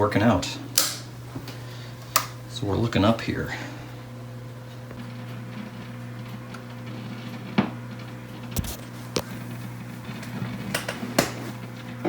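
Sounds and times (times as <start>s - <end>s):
tube radio hum: 8.2s - 12.0s.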